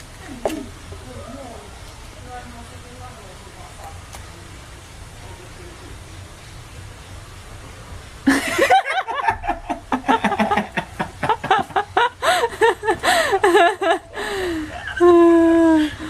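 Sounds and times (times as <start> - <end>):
person laughing hard: 8.3 - 16.0.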